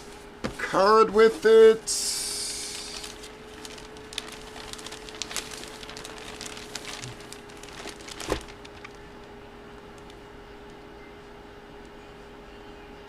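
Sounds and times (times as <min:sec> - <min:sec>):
faint steady hum: 0:00.0 - 0:13.0
packaging crinkling: 0:02.4 - 0:10.2.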